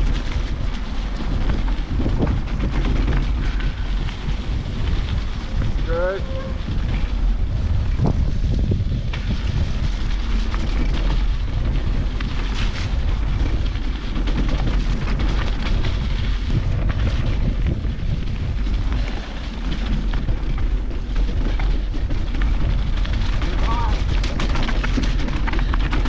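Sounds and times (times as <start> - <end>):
bike clicks and rattles: 0.0 - 26.0
wind buffeting camera: 0.0 - 26.0.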